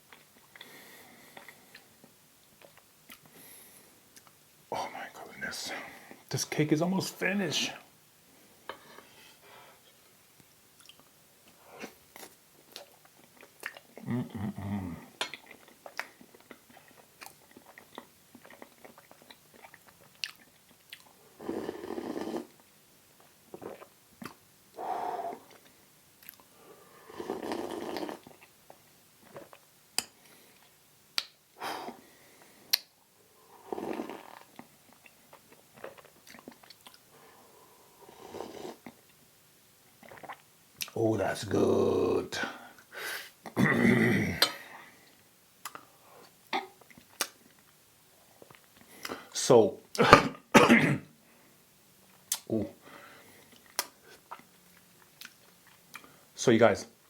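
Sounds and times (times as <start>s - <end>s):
person chewing: 0.1s - 3.4s, 10.8s - 11.1s, 11.8s - 14.2s, 15.2s - 21.2s, 23.2s - 24.4s, 25.3s - 26.5s, 27.3s - 32.0s, 33.9s - 37.1s, 40.0s - 41.0s, 45.6s - 47.7s, 52.2s - 52.5s, 53.5s - 56.2s
wet mouth clicks and smacks: 10.8s - 11.1s, 12.2s - 14.0s, 15.2s - 21.1s, 23.7s - 24.4s, 25.5s - 26.5s, 31.2s - 31.4s, 32.7s - 32.9s, 46.8s - 47.6s, 52.2s - 52.5s, 53.6s - 56.1s.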